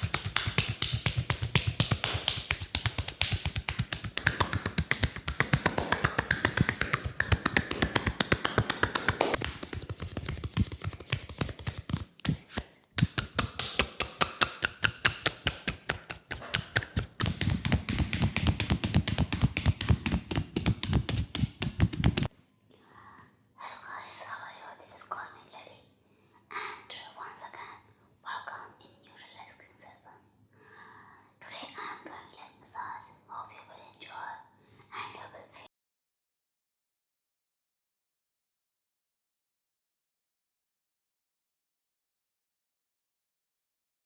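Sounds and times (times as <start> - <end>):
hands slapping on a leg: 0.0 - 22.3.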